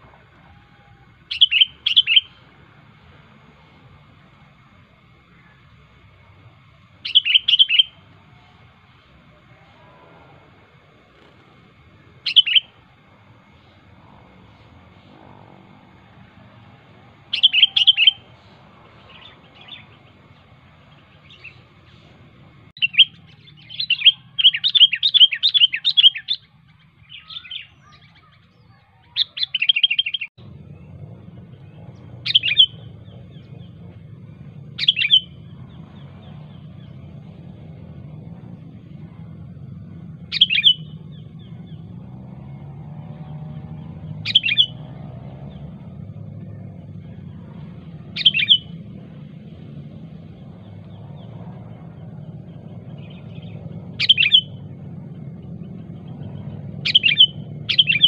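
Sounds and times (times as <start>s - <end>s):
low steady background hum: 0.0s - 58.0s
bulbul sharp chirps: 31.5s - 42.2s, 43.1s - 49.2s, 52.3s - 54.8s, 55.8s - 58.0s.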